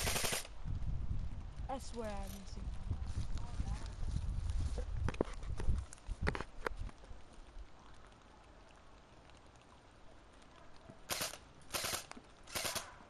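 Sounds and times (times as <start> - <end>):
airsoft gunfire bursts: 0.0 - 0.5, 11.1 - 12.9.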